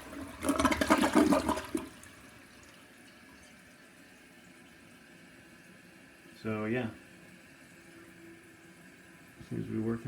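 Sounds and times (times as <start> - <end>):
toilet flushing: 0.0 - 5.4
faint steady hiss: 2.1 - 10.0.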